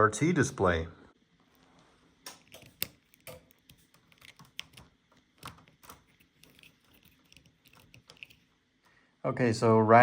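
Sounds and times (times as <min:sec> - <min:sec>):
clicks and taps on computer equipment: 0:02.2 - 0:06.6.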